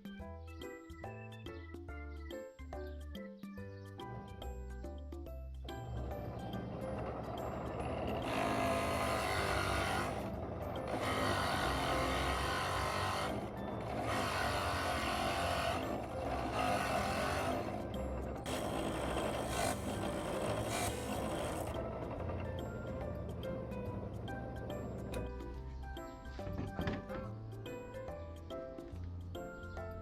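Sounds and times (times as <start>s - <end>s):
background music: 0.0s - 30.0s
woodworking tool strokes on wood: 18.4s - 21.8s.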